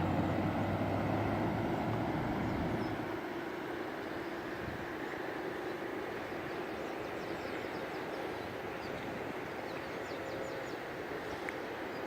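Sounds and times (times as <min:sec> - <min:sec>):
water rushing: 0:00.0 - 0:10.0
birds chirping: 0:01.6 - 0:03.1.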